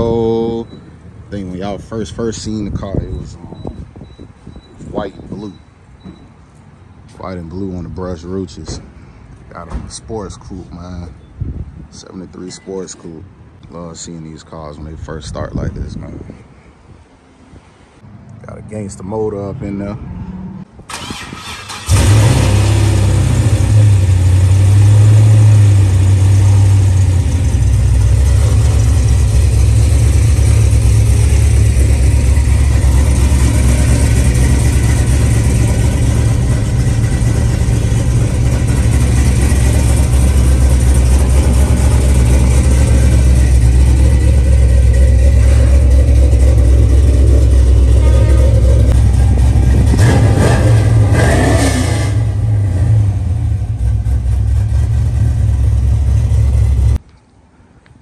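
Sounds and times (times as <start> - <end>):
car engine rumbling: 17.0 - 57.0.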